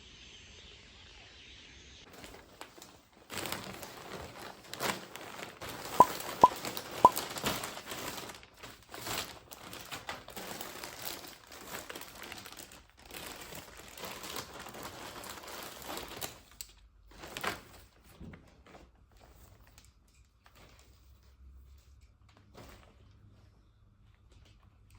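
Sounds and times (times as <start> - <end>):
packaging crinkling: 2.1 - 16.4.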